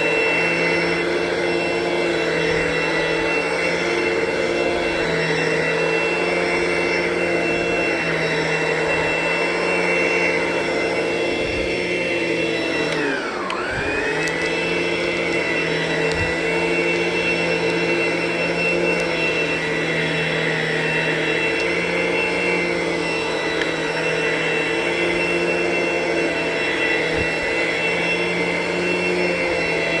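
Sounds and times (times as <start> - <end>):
vacuum cleaner running on carpet: 0.0 - 30.0.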